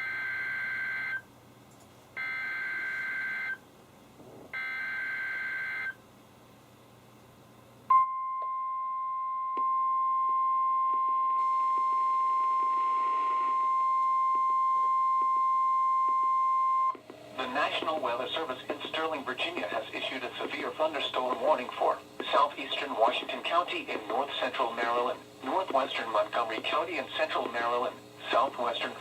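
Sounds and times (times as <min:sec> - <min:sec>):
steady warning alarm tone: 0:00.0 - 0:01.2, 0:02.2 - 0:03.6, 0:04.6 - 0:06.0, 0:07.9 - 0:17.0.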